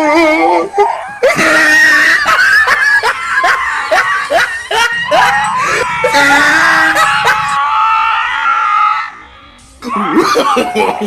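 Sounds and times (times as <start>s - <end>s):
wailing voice: 0.0s - 11.0s
person screaming: 3.4s - 9.1s.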